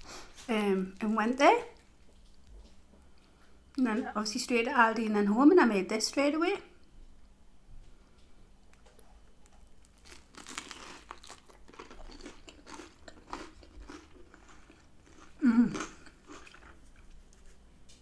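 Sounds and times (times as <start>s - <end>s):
chewing and crunching food: 0.2s - 3.7s, 7.8s - 18.0s.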